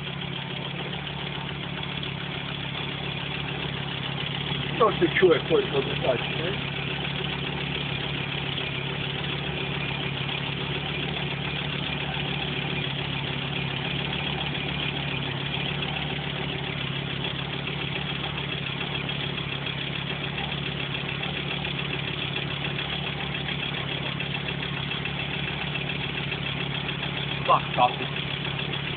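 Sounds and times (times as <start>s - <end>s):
car engine idling: 0.0s - 28.9s
mechanical engine noise: 0.0s - 28.9s.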